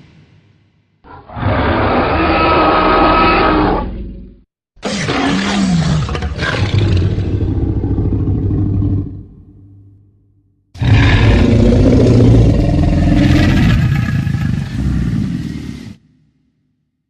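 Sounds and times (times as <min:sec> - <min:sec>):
dinosaur roar: 0:01.1 - 0:09.6, 0:10.8 - 0:16.0
low falling growl: 0:05.4 - 0:09.6, 0:10.8 - 0:16.0.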